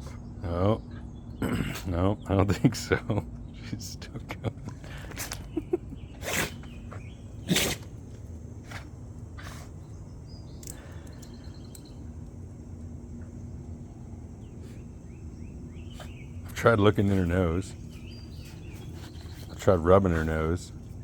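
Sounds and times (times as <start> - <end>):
dog sneezing: 6.1 - 8.0, 8.6 - 9.7.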